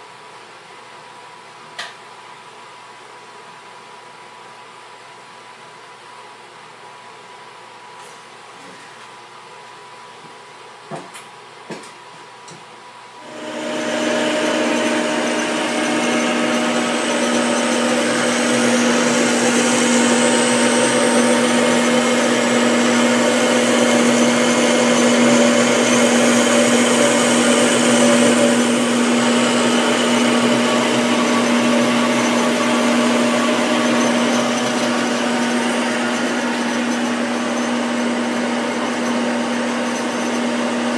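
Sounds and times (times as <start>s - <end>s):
power tool motor humming: 13.2s - 40.9s.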